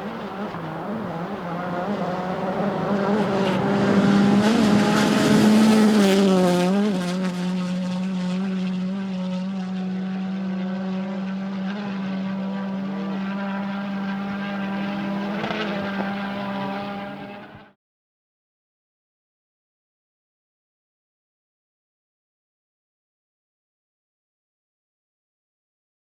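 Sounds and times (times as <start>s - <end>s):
car engine revving: 0.0s - 17.8s.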